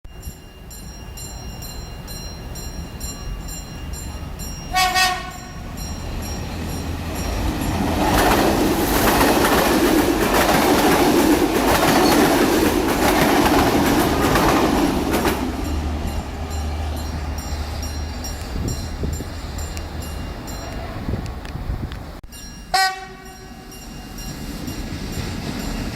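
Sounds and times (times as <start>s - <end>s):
train rumble and wheel noise: 0.1s - 25.9s
train horn blast: 4.7s - 5.7s, 22.7s - 23.7s.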